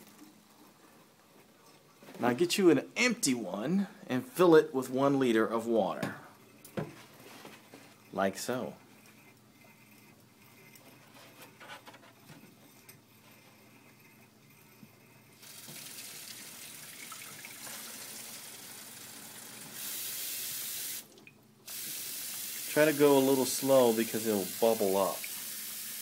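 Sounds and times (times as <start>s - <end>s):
water running into a container: 15.4s - 26.0s.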